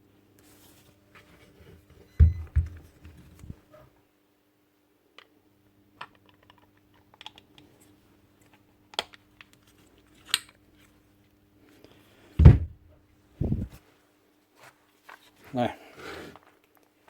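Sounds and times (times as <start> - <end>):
heavy thumps: 2.2 - 3.6, 12.4 - 13.8.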